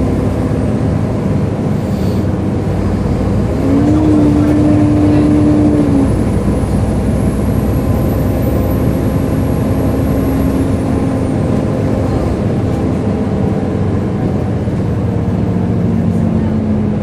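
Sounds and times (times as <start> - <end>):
bus engine: 0.0 - 17.0.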